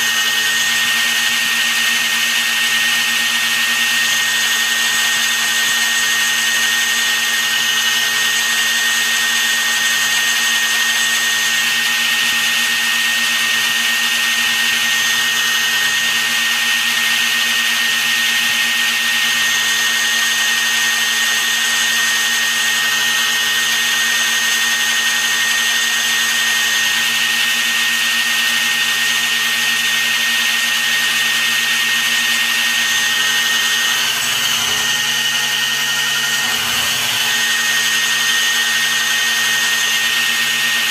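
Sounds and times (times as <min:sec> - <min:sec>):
workshop machinery high whine: 0:00.0 - 0:40.9.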